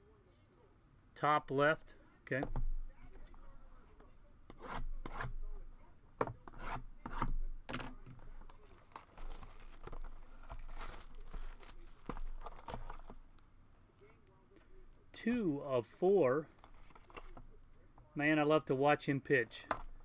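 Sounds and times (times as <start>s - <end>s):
packaging rubbing and rustling: 8.4s - 13.2s, 16.5s - 17.4s.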